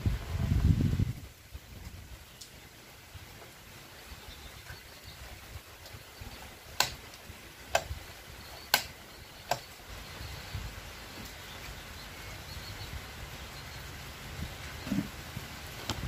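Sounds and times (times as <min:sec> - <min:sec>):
sharp clicks: 0:06.8 - 0:08.0, 0:08.6 - 0:09.8.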